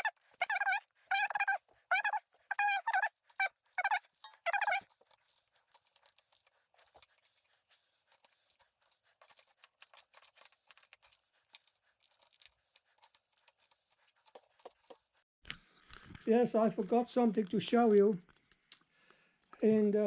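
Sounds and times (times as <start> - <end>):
scratching: 0.0 - 15.2.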